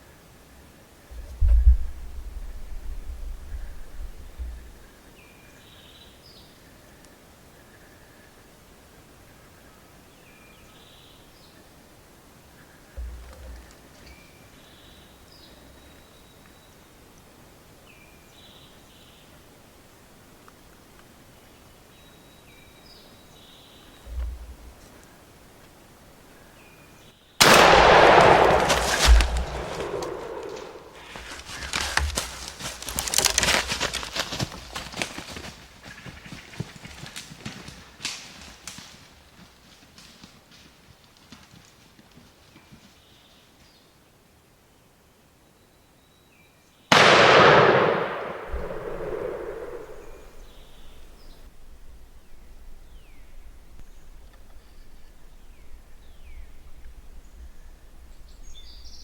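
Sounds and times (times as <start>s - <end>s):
distant bird chirps: 26.4s - 31.7s, 46.9s - 59.0s
running footsteps: 28.1s - 43.0s
low rumble: 48.2s - 59.0s.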